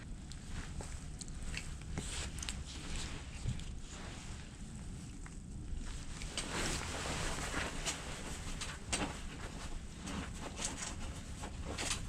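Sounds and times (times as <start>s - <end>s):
hands rustling gear: 5.7s - 12.0s.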